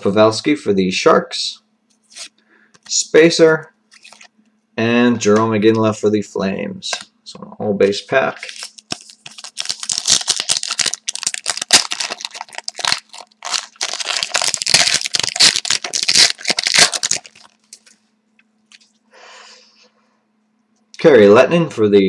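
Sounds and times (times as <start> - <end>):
wrapper tearing and crinkling: 8.4 - 17.9.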